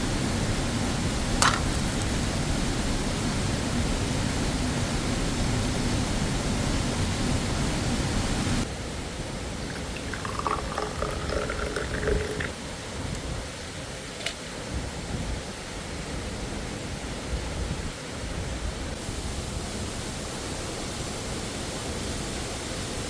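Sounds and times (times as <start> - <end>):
waterfall rushing: 0.0 - 8.7, 19.0 - 23.0.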